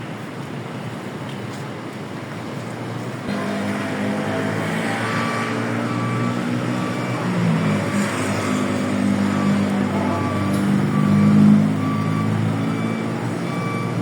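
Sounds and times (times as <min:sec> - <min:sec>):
vehicle engine running: 0:03.3 - 0:14.0.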